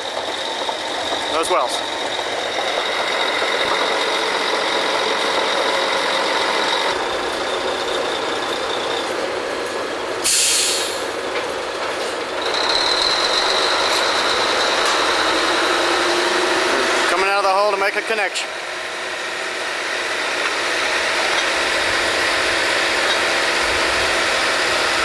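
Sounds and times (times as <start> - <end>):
drilling rig machinery whine: 0.0 - 25.0
hiss of released air: 10.2 - 11.1.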